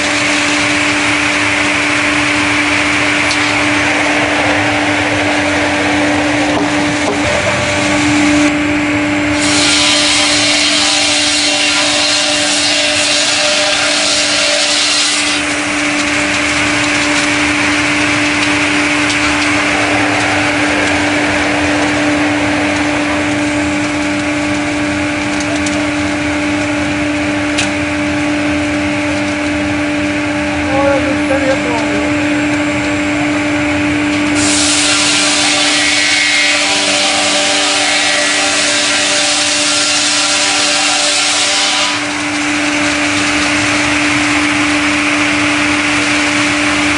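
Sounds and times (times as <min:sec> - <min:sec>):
sawmill machine humming: 0:00.0 - 0:46.9.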